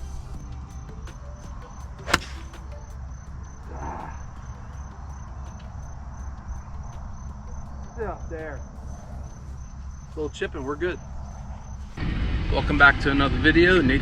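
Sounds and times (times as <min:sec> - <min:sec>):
insects chirping: 0:00.0 - 0:12.0
golf club striking ball: 0:02.0 - 0:02.8.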